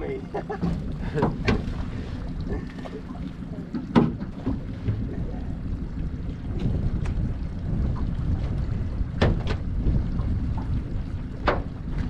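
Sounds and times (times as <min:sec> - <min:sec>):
outboard motor rumbling: 0:00.0 - 0:12.0
wind buffeting microphone: 0:00.0 - 0:12.0
knock on boat: 0:00.6 - 0:01.8, 0:03.7 - 0:05.1, 0:09.1 - 0:10.7, 0:11.4 - 0:11.8.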